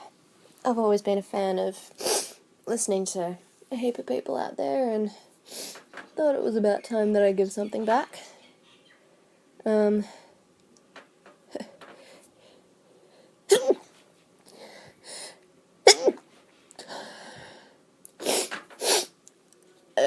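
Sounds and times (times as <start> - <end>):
breathing: 10.0 - 10.4, 11.8 - 13.4, 14.5 - 15.4, 16.8 - 17.8.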